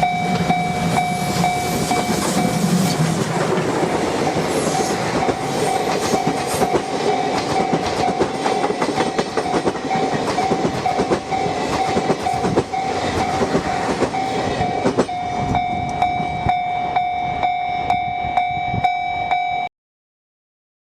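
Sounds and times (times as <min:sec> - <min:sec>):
level crossing alarm pulsing: 0:00.0 - 0:03.1, 0:03.8 - 0:19.7
train wheels clattering over rail joints: 0:01.4 - 0:16.0.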